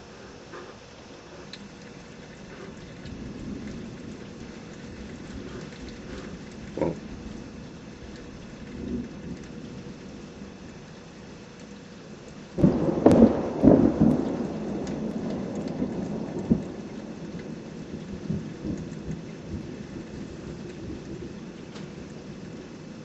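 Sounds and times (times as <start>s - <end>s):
steady rain falling: 0.0s - 23.0s
thunder crashing and rumbling: 2.8s - 10.8s, 12.5s - 22.8s.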